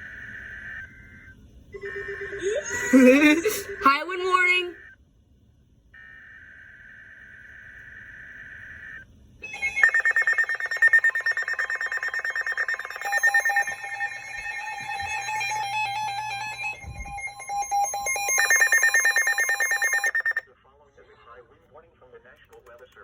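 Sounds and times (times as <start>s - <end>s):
pulsing electronic alarm: 0.0s - 5.0s, 6.0s - 20.4s
steady tone: 9.4s - 20.4s.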